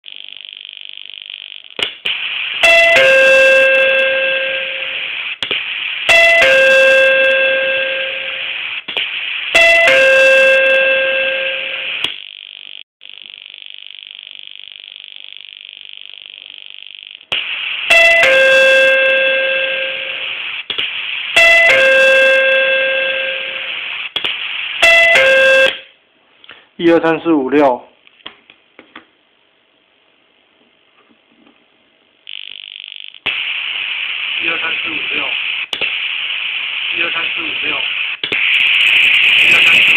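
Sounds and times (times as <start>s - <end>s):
steady hiss: 0.1s - 2.6s, 4.6s - 6.1s, 8.0s - 9.6s, 11.8s - 18.4s, 19.6s - 21.4s, 23.2s - 24.8s, 32.2s - 39.9s.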